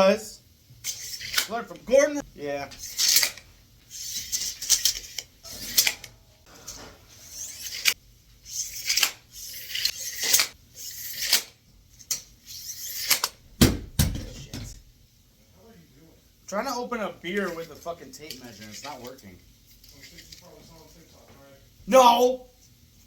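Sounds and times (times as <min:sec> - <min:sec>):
metal scraping bottle cap: 0:00.8 - 0:01.6, 0:02.7 - 0:13.4
knocks: 0:13.6 - 0:14.8.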